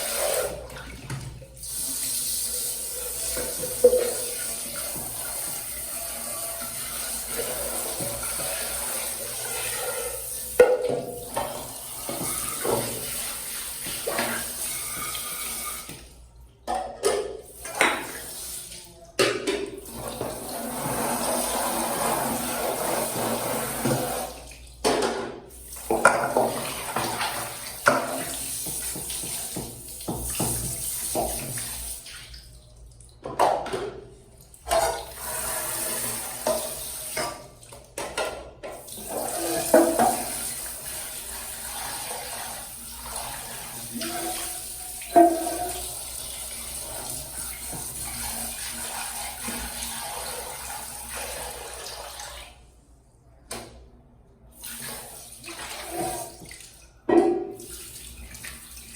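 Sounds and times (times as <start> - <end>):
water running from a tap: 0.0 - 16.5, 17.1 - 33.5, 34.4 - 52.7, 54.5 - 56.9, 57.5 - 58.9
items knocking in a sink: 3.4 - 5.2, 10.6 - 13.1, 19.2 - 21.2, 23.0 - 31.7, 33.2 - 35.1, 36.4 - 38.8, 39.4 - 40.4, 55.9 - 57.7.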